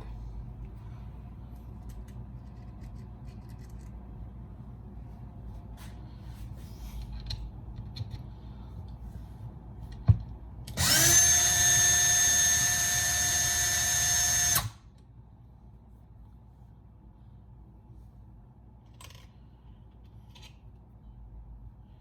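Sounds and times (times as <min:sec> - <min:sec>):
power drill whining: 0:10.8 - 0:14.7.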